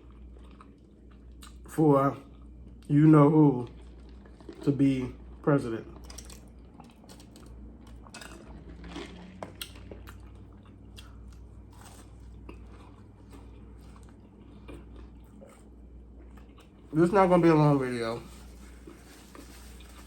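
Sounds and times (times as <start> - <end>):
person chewing food: 0.0 - 2.9, 3.6 - 17.0
small crunches: 3.6 - 15.7, 16.3 - 20.0.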